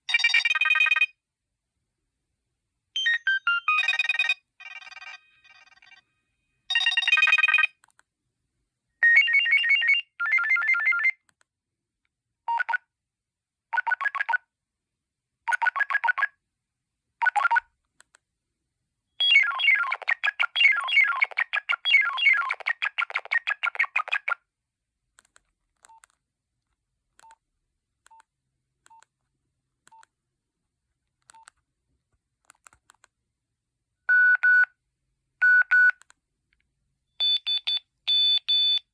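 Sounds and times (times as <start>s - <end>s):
electronic phone ringtones: 0.1s - 1.2s, 3.0s - 6.0s, 6.7s - 7.8s, 37.2s - 38.8s.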